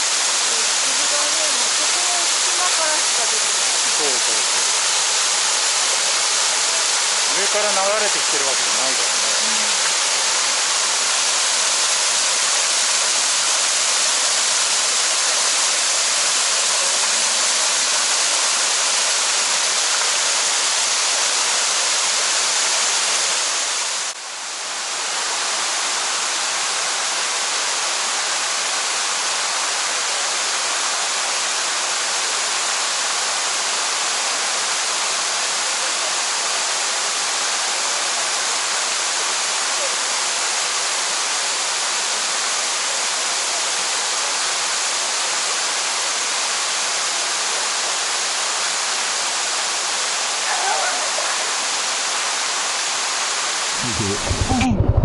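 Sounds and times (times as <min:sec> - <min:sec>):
rushing waterfall: 0:00.0 - 0:55.0.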